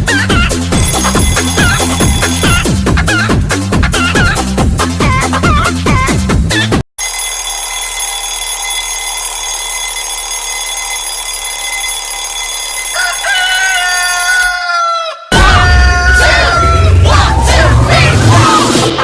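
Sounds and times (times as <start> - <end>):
held electronic tone: 0.8 - 2.6
rooster crowing: 12.7 - 16.9.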